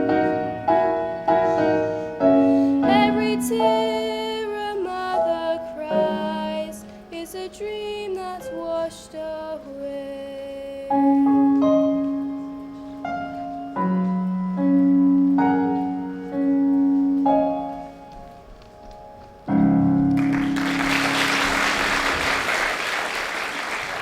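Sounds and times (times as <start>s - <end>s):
piano chords: 0.0s - 24.0s
audience applause: 20.1s - 24.0s.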